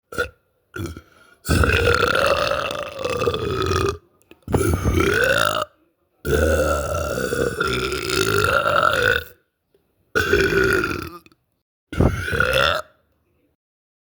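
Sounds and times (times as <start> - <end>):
boy burping: 0.1 - 5.6, 6.3 - 9.4, 10.2 - 11.3, 12.0 - 12.9.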